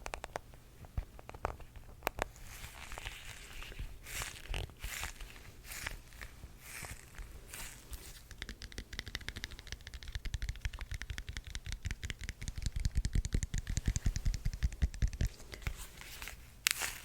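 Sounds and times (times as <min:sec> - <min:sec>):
rapid clicking taps: 0:08.2 - 0:15.6.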